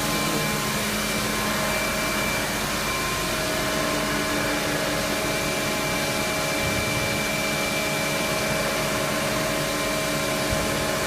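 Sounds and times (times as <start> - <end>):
milling machine hum and whine: 0.0 - 11.0.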